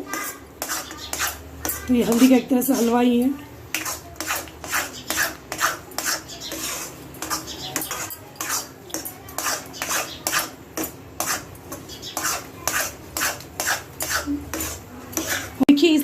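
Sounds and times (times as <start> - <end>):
metal spoon scraping a pan: 0.0 - 15.7.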